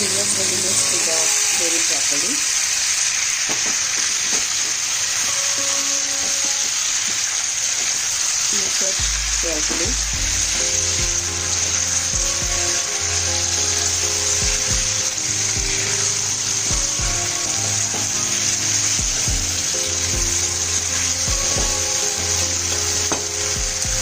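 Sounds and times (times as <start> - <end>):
gravy sizzling in a pan: 0.0 - 24.0
background music: 9.0 - 24.0.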